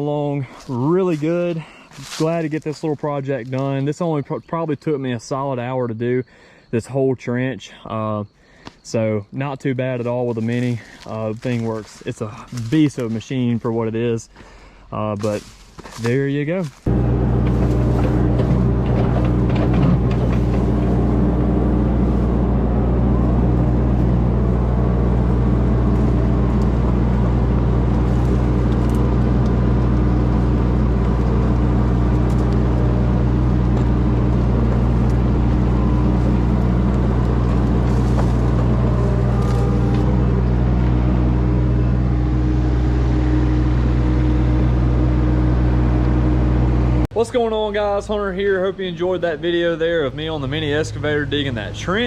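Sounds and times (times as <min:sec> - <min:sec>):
diesel engine running: 0:15.2 - 0:52.0.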